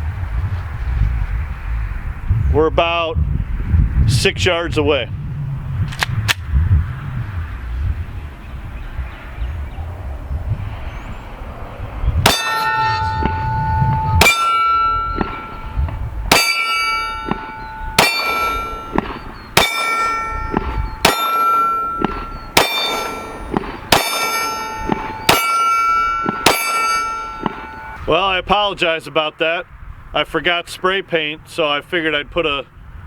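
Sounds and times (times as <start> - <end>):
steel plate ringing: 12.2 - 28.1
pistol shots: 16.3 - 28.0.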